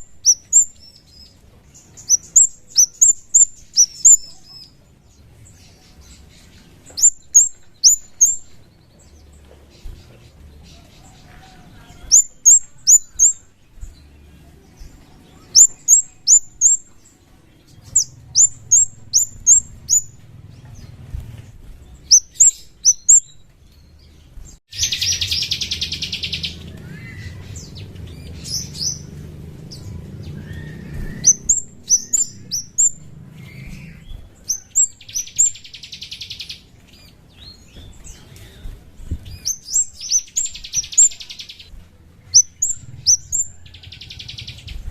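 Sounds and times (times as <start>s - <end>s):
bird chirps sliding downward: 0.0s - 1.3s, 1.9s - 4.8s, 6.0s - 9.2s, 11.7s - 13.6s, 15.1s - 16.9s, 17.7s - 20.2s, 22.0s - 23.4s, 24.7s - 37.6s, 39.4s - 41.7s, 42.3s - 44.8s
buzzy bird trill: 0.0s - 24.1s, 24.7s - 38.2s, 39.2s - 44.9s.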